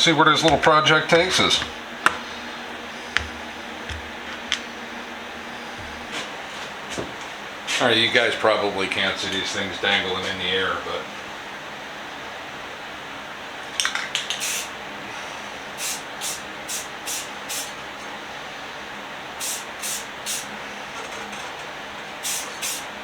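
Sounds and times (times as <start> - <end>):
spray paint hissing: 14.3 - 14.7, 15.8 - 17.8, 19.4 - 20.6, 22.2 - 23.0.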